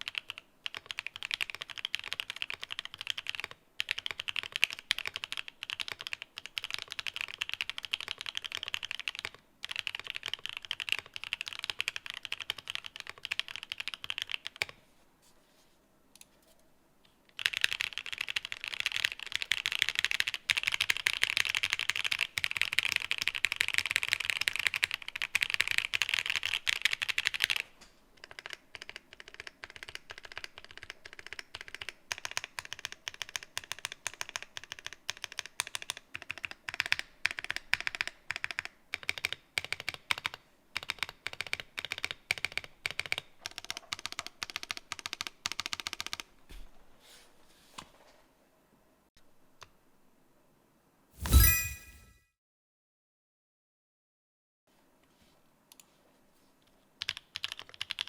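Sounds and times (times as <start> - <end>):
fast typing on mechanical keyboard: 0.0 - 14.8, 17.3 - 46.3, 57.0 - 58.0.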